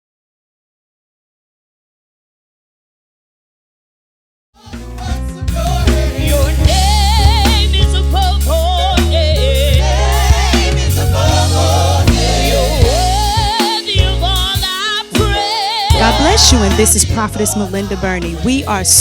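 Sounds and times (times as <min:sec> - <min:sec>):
gospel music with choir: 0:04.6 - 0:19.0.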